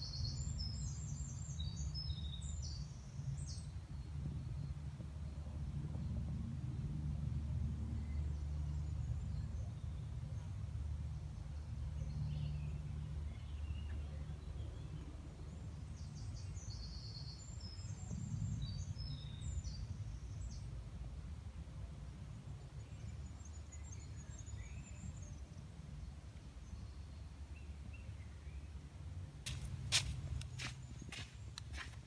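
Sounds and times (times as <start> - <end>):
small birds chirping: 29.5 - 32.0
steady low rumble: 29.5 - 32.0.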